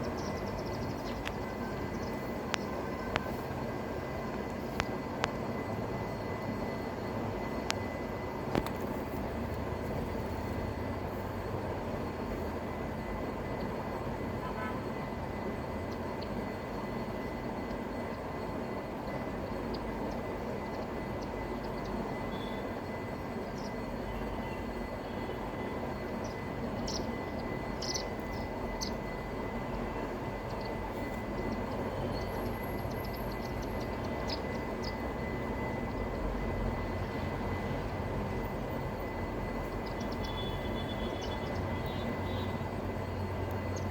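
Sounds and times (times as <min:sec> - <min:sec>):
sparrows chirping: 0:00.0 - 0:03.6, 0:15.7 - 0:43.9
rushing background noise: 0:00.0 - 0:43.9.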